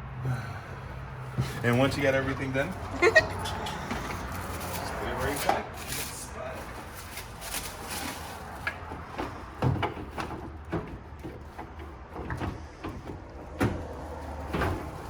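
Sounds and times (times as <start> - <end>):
knocks and clicks of headlight handling: 8.6 - 15.0.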